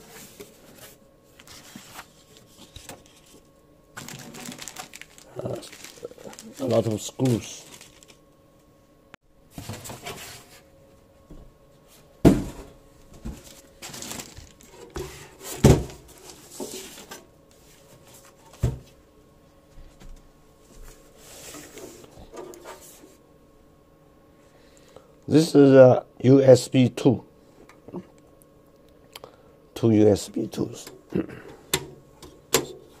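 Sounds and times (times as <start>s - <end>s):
rustling: 4.0s - 8.2s, 13.3s - 18.4s.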